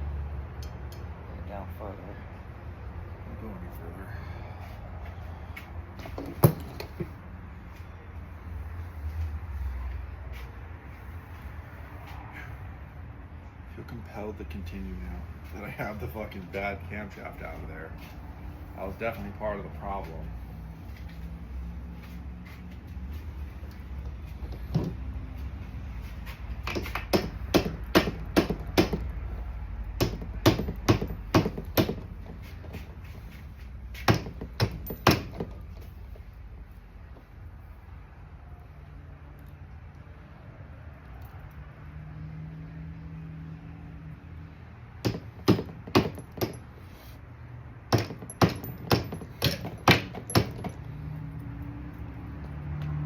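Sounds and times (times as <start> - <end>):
sharp knocks: 26.6 - 29.1, 30.0 - 32.8, 34.0 - 35.6, 45.0 - 46.7, 47.9 - 50.8.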